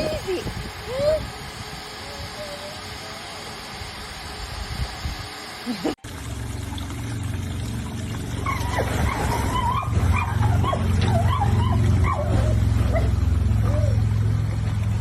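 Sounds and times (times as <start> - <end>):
steady low hum: 0.0 - 15.0
dog whining and yipping: 8.4 - 14.0.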